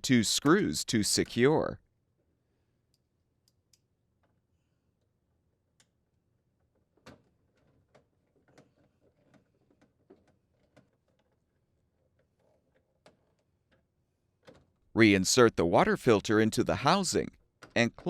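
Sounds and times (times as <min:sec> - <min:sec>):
faint clicks and taps of tools: 0:02.9 - 0:04.4, 0:05.7 - 0:06.0.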